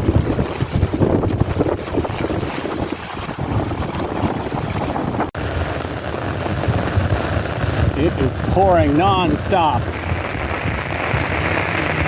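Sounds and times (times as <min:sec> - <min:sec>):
wind buffeting microphone: 0:00.0 - 0:12.0
heavy rain downpour: 0:05.4 - 0:12.0.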